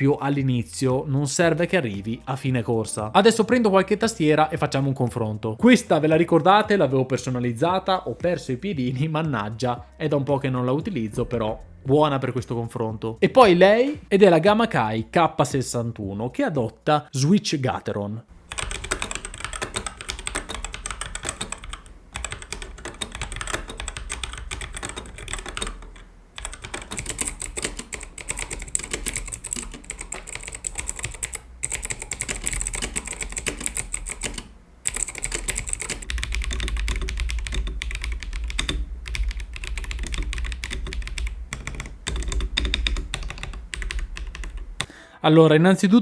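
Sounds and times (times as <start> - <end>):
rapid typing on mechanical keyboards: 18.4 - 44.9.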